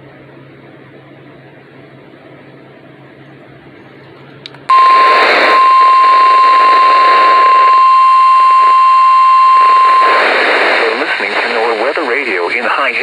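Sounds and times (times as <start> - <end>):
steady alarm tone: 4.7 - 10.8
radio hiss: 4.7 - 13.0.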